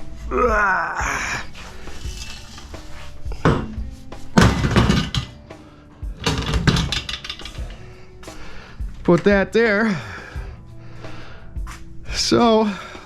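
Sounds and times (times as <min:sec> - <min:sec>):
scrap metal knocking and clanking: 0:01.9 - 0:03.8, 0:04.4 - 0:05.4, 0:06.2 - 0:07.7.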